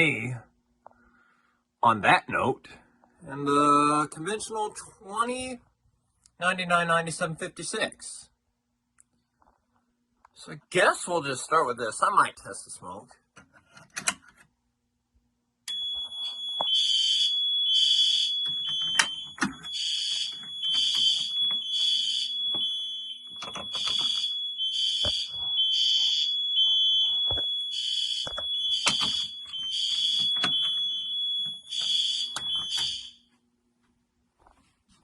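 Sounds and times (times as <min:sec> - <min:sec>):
fire alarm horns blasting: 0:15.7 - 0:33.3.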